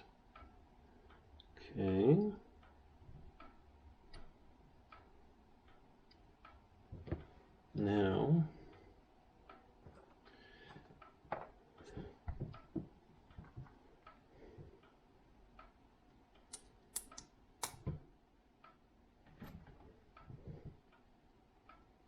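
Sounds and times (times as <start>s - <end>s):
sharp plastic snaps: 16.4s - 18.0s.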